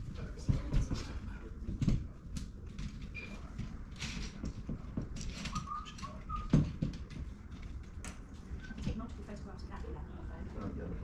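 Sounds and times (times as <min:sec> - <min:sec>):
light knocks and clatter: 0:00.0 - 0:09.9
high chirps or squeaks: 0:05.4 - 0:06.6.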